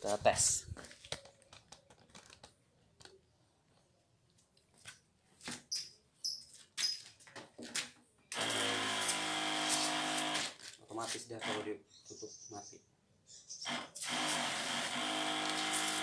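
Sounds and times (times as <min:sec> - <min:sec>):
electric sprayer pump humming: 0:08.3 - 0:10.6, 0:13.7 - 0:16.0.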